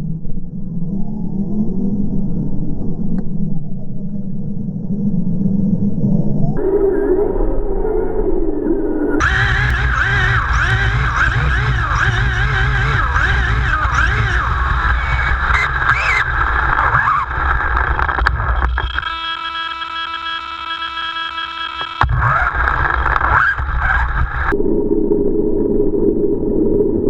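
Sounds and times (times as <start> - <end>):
dull steady hum: 0.0 - 27.0
electric motor whine: 9.2 - 24.5.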